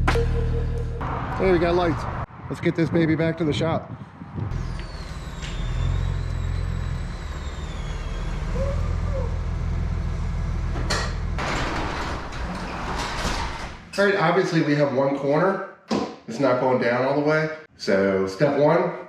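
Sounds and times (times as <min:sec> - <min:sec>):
vehicle engine and road rumble: 0:00.0 - 0:13.9.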